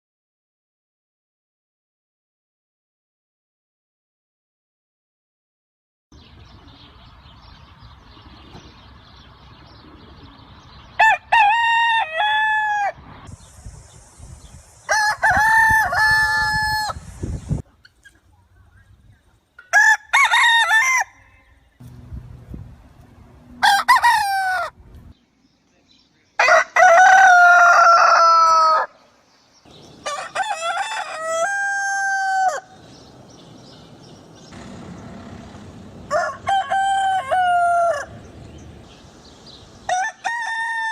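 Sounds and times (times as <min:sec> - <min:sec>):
rooster crowing: 0:11.0 - 0:13.0, 0:14.9 - 0:17.0, 0:19.7 - 0:21.5, 0:23.6 - 0:24.8, 0:26.4 - 0:29.0, 0:30.0 - 0:32.8, 0:34.6 - 0:38.3, 0:39.9 - 0:40.9.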